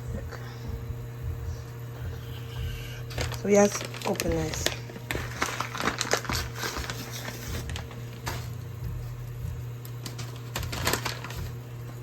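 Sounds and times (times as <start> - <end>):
low hum: 0.0 - 6.4, 7.1 - 12.0
food package rustling: 3.1 - 8.6, 10.0 - 12.0.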